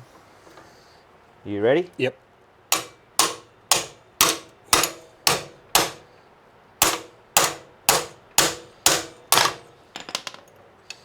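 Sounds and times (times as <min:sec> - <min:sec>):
hammer striking metal bolt: 0:02.7 - 0:06.1, 0:06.8 - 0:10.2.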